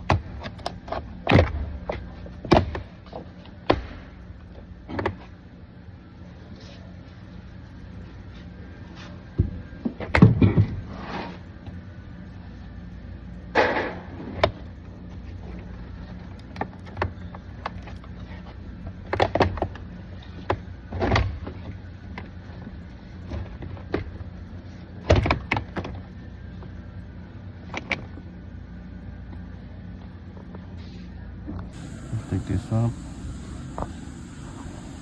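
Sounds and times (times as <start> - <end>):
steady low hum: 31.6 - 35.0.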